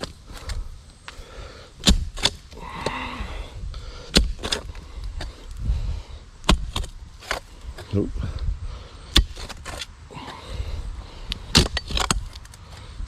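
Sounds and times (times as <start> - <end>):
digging tool striking soil: 1.8 - 3.0, 4.0 - 5.5, 6.4 - 8.0, 9.1 - 9.9, 11.4 - 12.6.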